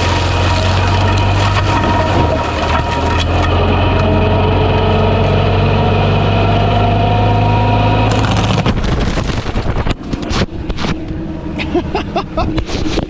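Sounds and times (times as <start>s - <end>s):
sharp knocks and cracks: 0.0s - 4.2s, 8.1s - 11.0s
excavator mulcher droning: 0.0s - 12.8s.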